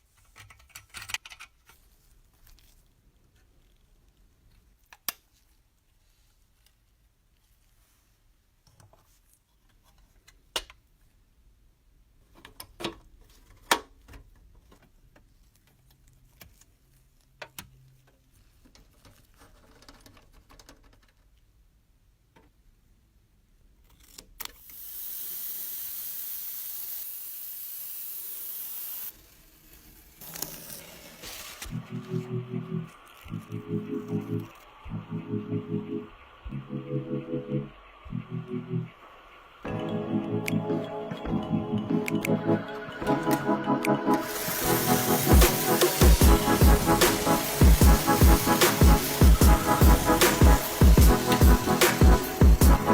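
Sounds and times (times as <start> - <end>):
small clicks and taps of parts: 0.1 - 1.8, 12.4 - 21.4
steady hiss: 24.6 - 35.0, 44.1 - 52.9
music: 31.7 - 52.9.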